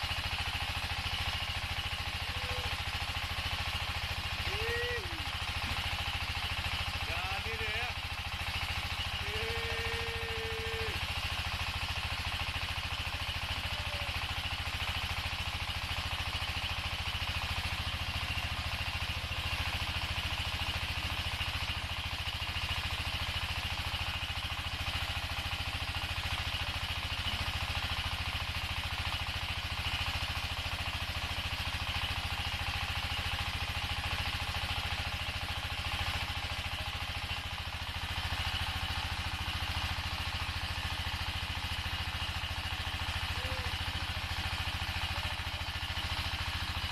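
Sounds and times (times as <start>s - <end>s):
extruder machine droning: 9.0s - 11.1s.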